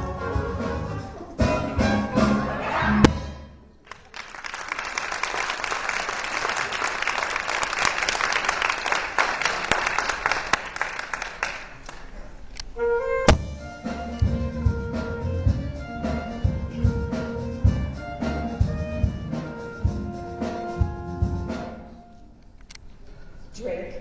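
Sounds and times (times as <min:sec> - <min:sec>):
band playing: 0:00.0 - 0:03.5, 0:12.8 - 0:22.2
audience applauding: 0:03.8 - 0:12.3.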